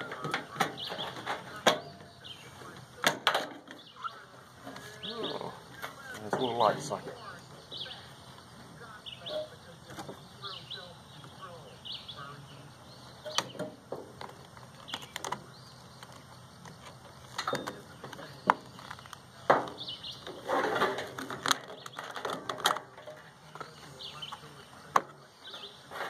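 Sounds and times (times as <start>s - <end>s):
rattling scrape: 0.0s - 2.0s, 20.3s - 23.4s, 25.5s - 26.0s.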